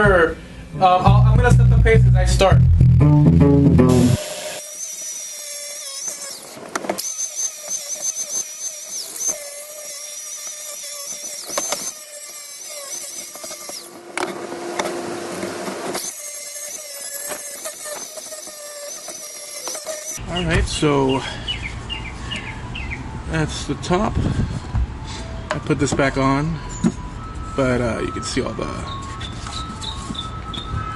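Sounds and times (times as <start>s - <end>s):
rotary tool whining cutting wood: 4.1s - 20.3s, 26.6s - 30.9s.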